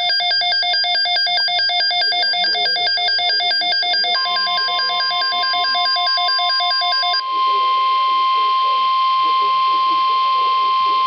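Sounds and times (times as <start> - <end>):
warbling electronic alarm: 0.0 - 11.0
steady alert tone: 2.1 - 7.8.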